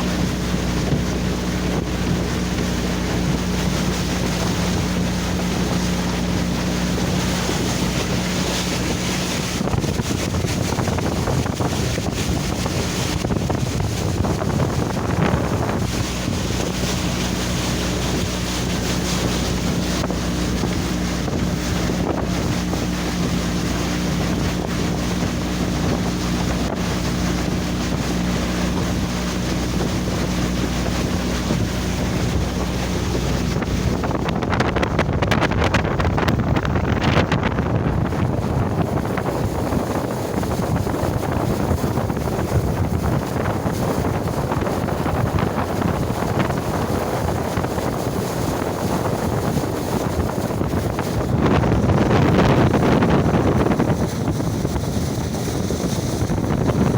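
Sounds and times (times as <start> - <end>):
small boat motor running: 0.0 - 56.9
water noise: 0.0 - 56.9
wind buffeting microphone: 0.0 - 56.9.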